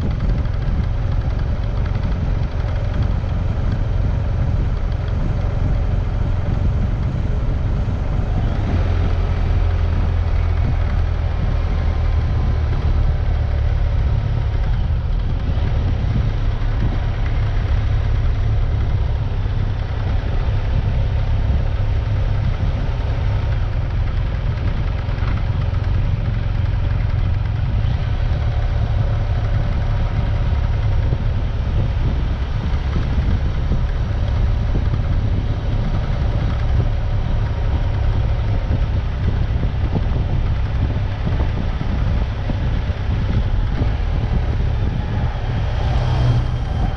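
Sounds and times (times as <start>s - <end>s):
vehicle engine rumbling: 0.0s - 46.9s.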